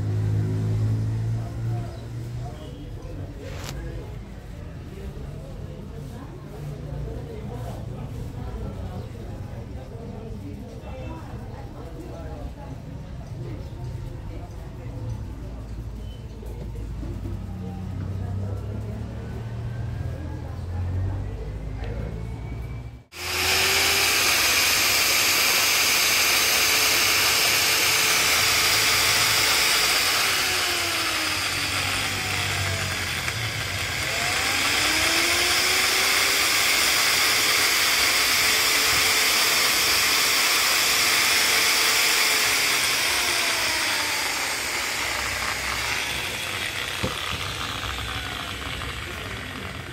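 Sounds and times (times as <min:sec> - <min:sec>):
grinder cutting metal: 0:23.1 - 0:49.9.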